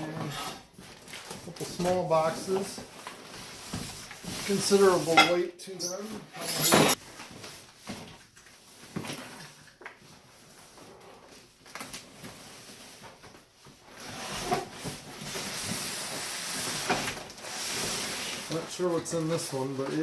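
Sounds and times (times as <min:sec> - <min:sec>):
cardboard rustling: 0:00.0 - 0:05.1, 0:10.0 - 0:20.0.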